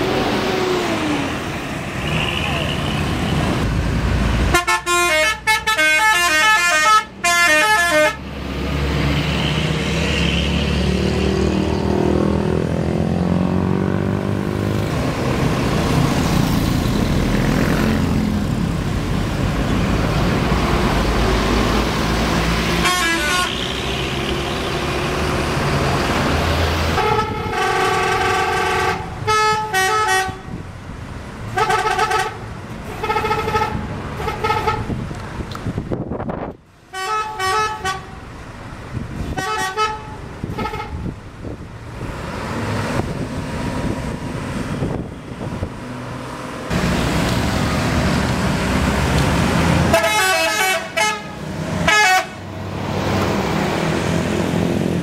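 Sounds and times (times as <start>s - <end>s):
bus engine rumbling past: 0.0s - 6.1s, 7.0s - 55.0s
musical air horn melody: 4.5s - 8.2s, 22.8s - 23.5s, 27.0s - 30.4s, 36.9s - 38.1s, 49.9s - 52.4s.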